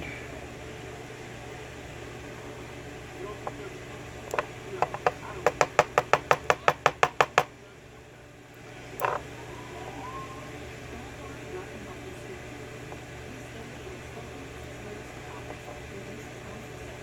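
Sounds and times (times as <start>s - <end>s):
low hum: 8.5s - 17.0s.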